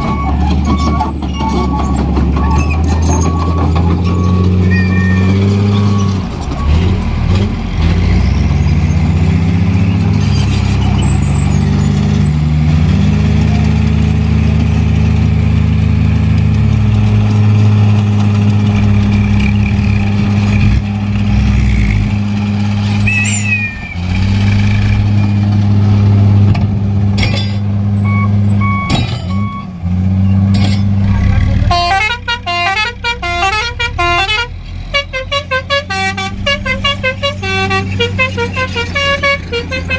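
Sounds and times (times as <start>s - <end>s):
high squeal: 0.0s - 6.8s, 8.0s - 12.1s, 22.8s - 25.4s
short beeps: 0.0s - 6.8s, 23.1s - 24.0s, 28.0s - 29.7s
diesel truck engine revving: 0.0s - 39.9s.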